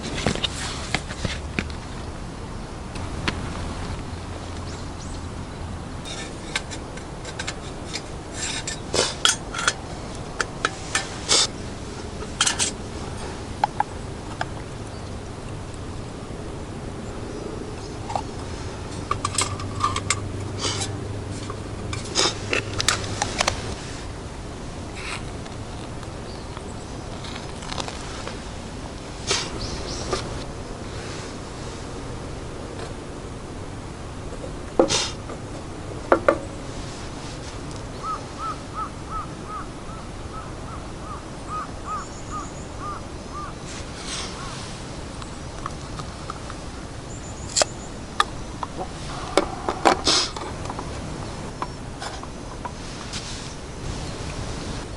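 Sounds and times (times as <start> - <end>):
bird calling: 29.2 - 30.4, 37.9 - 45.8, 47.0 - 50.5.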